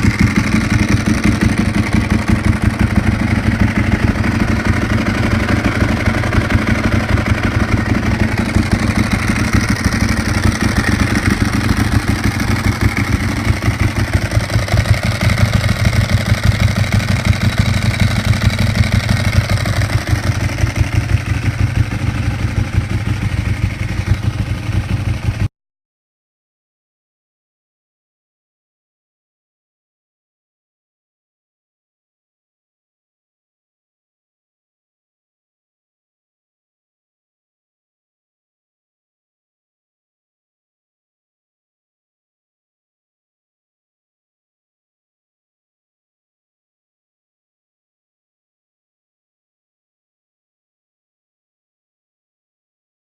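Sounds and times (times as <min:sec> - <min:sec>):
motorcycle engine idling: 0:00.0 - 0:25.5.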